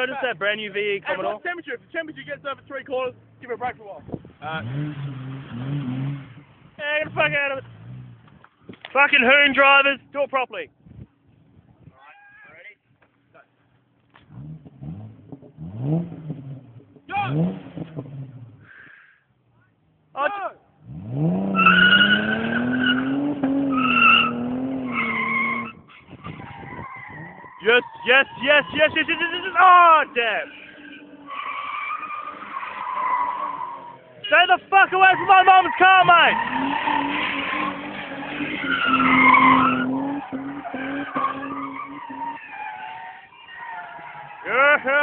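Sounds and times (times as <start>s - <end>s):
engine revving high: 4.4s - 8.2s, 14.3s - 18.6s, 20.8s - 25.8s, 35.0s - 42.4s
tyres squealing: 21.5s - 45.0s.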